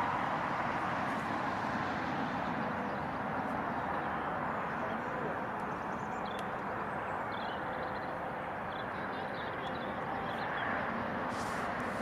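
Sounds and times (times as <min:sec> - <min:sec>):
jet airliner rush: 0:11.1 - 0:12.0.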